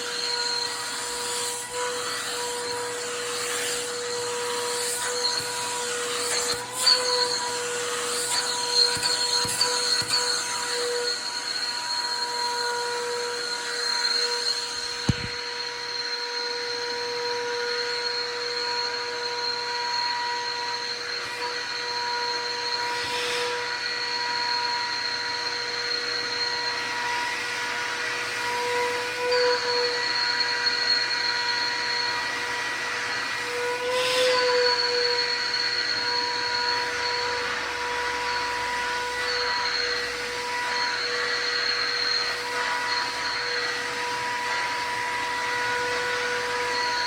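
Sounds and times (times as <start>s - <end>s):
shop vacuum running: 0.0s - 47.0s.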